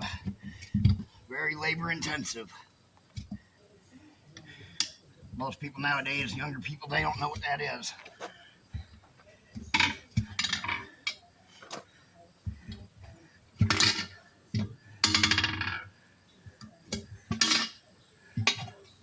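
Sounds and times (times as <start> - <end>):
metal tools clanking on wheel rim: 9.6 - 11.8, 13.6 - 15.9, 16.9 - 18.9.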